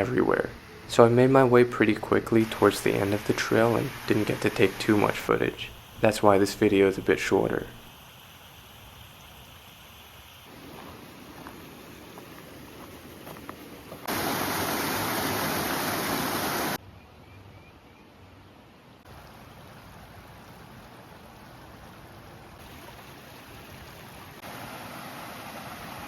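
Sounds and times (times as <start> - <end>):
rushing waterfall and stream: 1.5 - 7.9, 10.5 - 16.8, 18.6 - 26.0.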